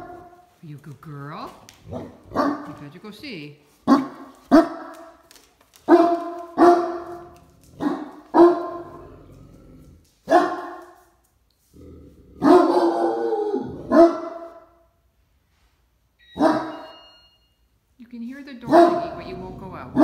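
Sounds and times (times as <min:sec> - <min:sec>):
dog barking: 0:01.9 - 0:02.8, 0:03.9 - 0:05.1, 0:05.9 - 0:07.2, 0:07.8 - 0:08.9, 0:10.3 - 0:10.9, 0:12.4 - 0:14.8, 0:16.4 - 0:16.9, 0:18.6 - 0:20.0.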